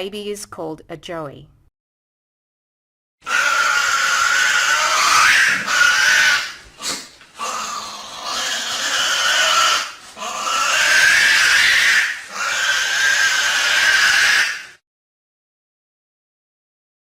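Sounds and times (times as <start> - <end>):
animal screeching: 3.2 - 14.8.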